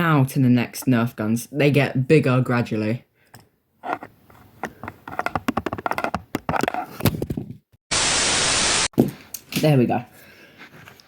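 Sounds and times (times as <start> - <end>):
plastic toys tapping and clicking: 4.7 - 6.8
loud steady hiss: 7.9 - 8.9.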